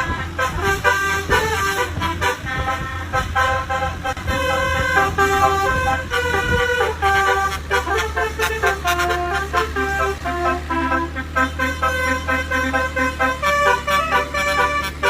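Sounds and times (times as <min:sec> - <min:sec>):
multi-tone bus horn melody: 0:00.0 - 0:15.0
steady low hum: 0:00.0 - 0:15.0.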